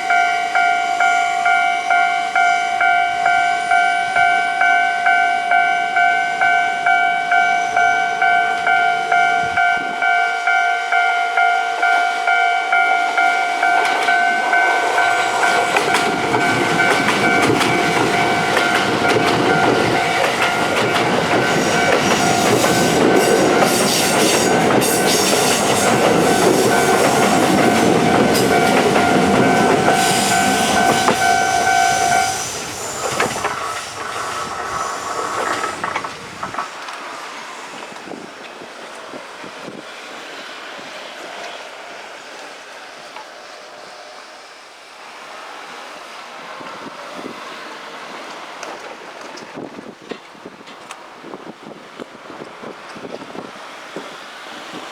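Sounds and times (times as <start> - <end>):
level-crossing warning bell ringing: 0.0 - 36.5
trains passing with rumble: 0.0 - 54.9
rail clatter: 11.9 - 39.8.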